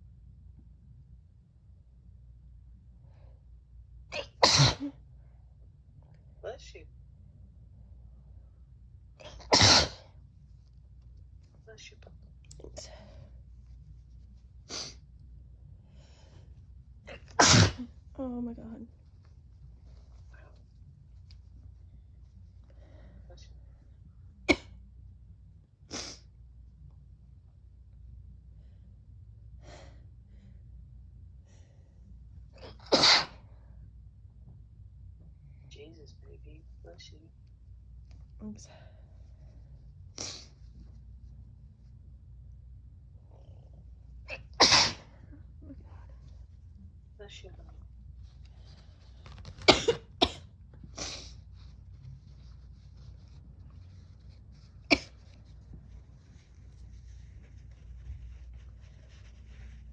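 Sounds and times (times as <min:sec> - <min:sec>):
person sneezing: 0:04.2 - 0:05.0, 0:09.2 - 0:10.0, 0:17.1 - 0:18.0, 0:32.6 - 0:33.4, 0:44.3 - 0:45.3, 0:54.9 - 0:55.2.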